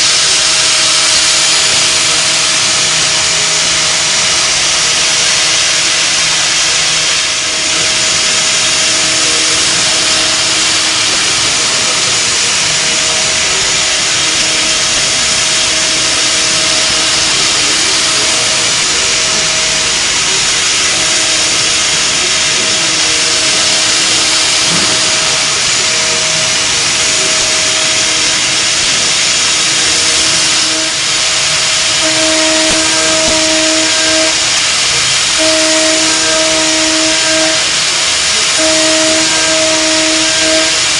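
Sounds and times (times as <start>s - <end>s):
milling machine cutting metal: 7.0s - 36.6s.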